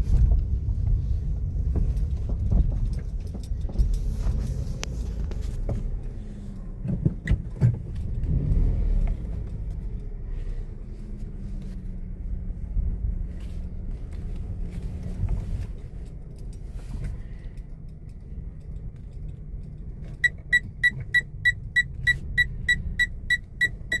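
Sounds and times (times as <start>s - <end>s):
car moving rumble: 0.0s - 24.0s
high electronic beeps: 20.2s - 24.0s.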